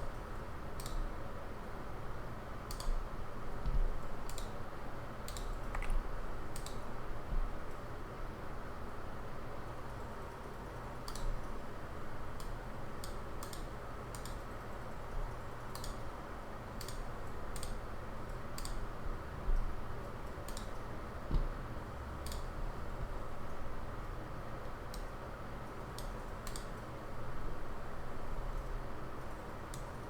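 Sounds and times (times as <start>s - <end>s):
mouse and keyboard clicks: 5.3s - 6.0s.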